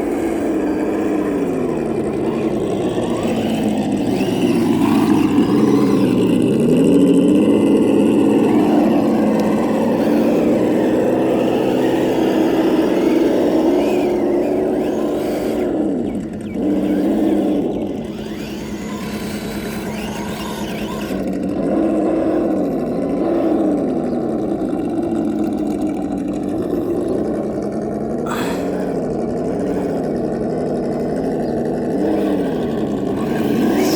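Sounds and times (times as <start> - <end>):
electric motor whining: 0.0 - 33.9.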